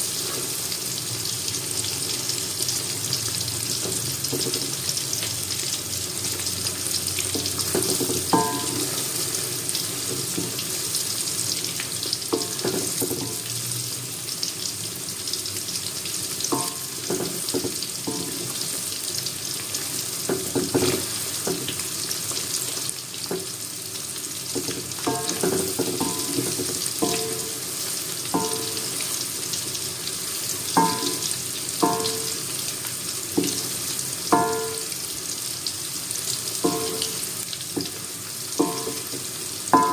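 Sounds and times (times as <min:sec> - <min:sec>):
tofu sizzling in hot oil: 0:00.0 - 0:39.9
utensil clinking against pan: 0:07.8 - 0:08.9, 0:25.0 - 0:27.6, 0:28.3 - 0:28.9, 0:30.8 - 0:31.2, 0:36.6 - 0:37.2, 0:38.6 - 0:39.2.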